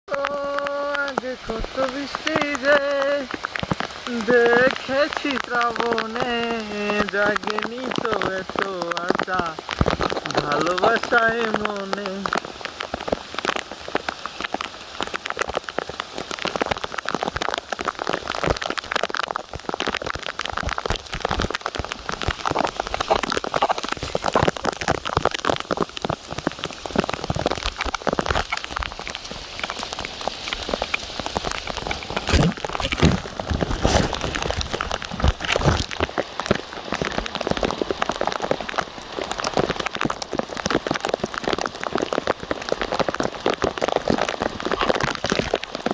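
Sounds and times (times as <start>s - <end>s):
rain on hard surface: 0.1s - 45.9s.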